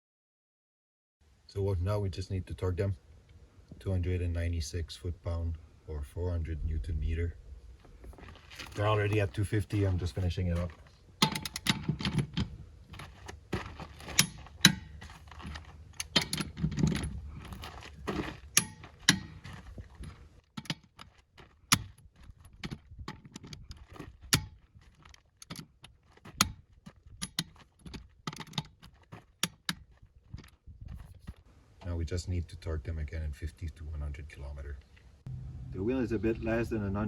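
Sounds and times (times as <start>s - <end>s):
wrench clicking on wheel nuts: 11.2s - 12.5s, 14.0s - 17.2s, 18.5s - 19.4s, 27.2s - 29.8s.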